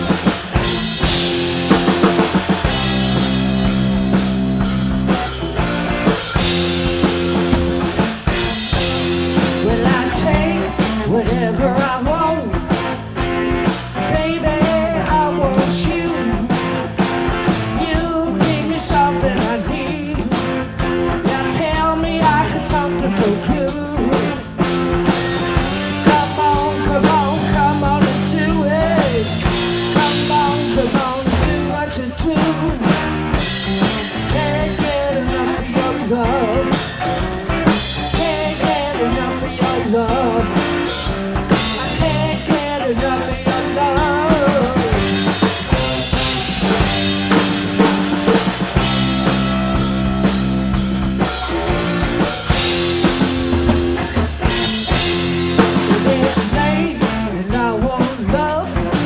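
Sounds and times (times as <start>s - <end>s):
drum kit beat: 0.0s - 59.0s
rock band playing: 0.0s - 59.0s
person singing: 8.7s - 13.0s, 13.9s - 24.5s, 25.7s - 53.4s, 54.4s - 59.0s.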